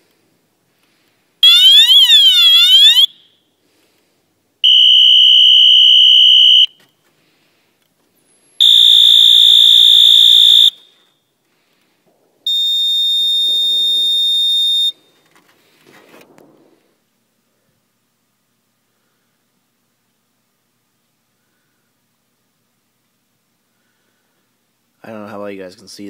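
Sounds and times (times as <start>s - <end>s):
fire alarm horn blasts: 1.4s - 3.3s, 4.6s - 6.8s, 8.6s - 10.9s, 12.5s - 15.0s
faint rustling: 15.0s - 17.0s.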